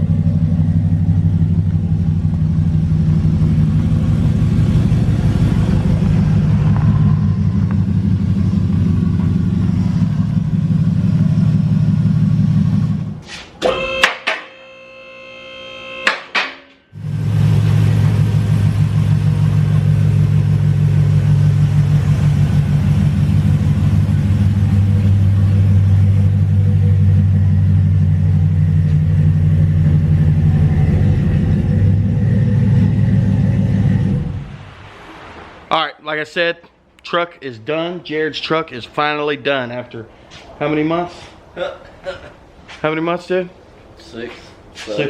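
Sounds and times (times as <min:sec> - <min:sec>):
truck engine idling: 0:00.0 - 0:13.3, 0:17.0 - 0:34.5.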